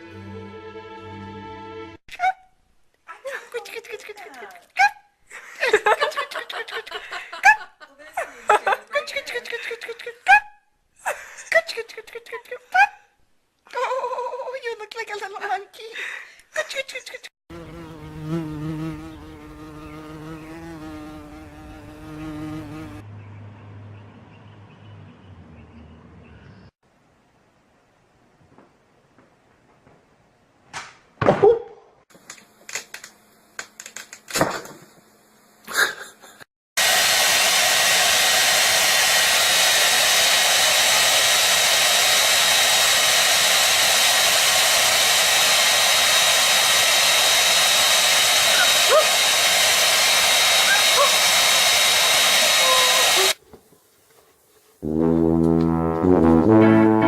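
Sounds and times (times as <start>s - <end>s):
whirring blower: 17.5s - 23.0s, 36.8s - 53.4s.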